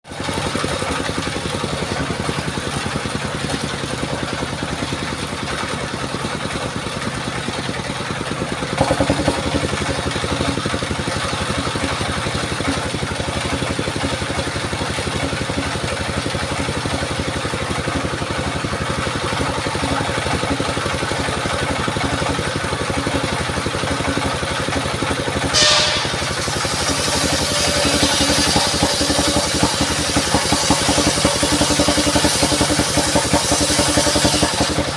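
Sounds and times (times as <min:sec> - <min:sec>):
sawmill engine running: 0:00.1 - 0:34.9
brief hiss: 0:25.6 - 0:29.2.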